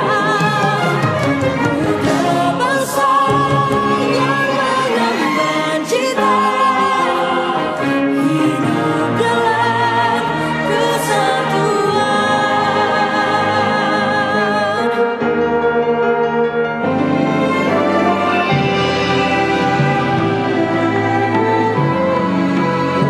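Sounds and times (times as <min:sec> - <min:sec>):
choir singing: 0:00.0 - 0:15.2, 0:16.9 - 0:23.0
woman singing with vibrato: 0:00.0 - 0:15.2
orchestral backing: 0:00.0 - 0:23.0.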